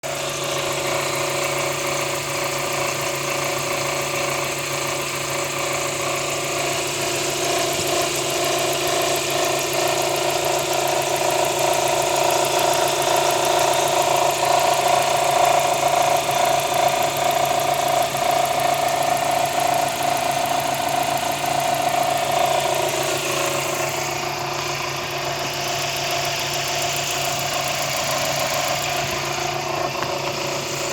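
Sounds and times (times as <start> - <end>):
car engine running: 0.0 - 30.9
steady tone over engine: 20.5 - 30.9.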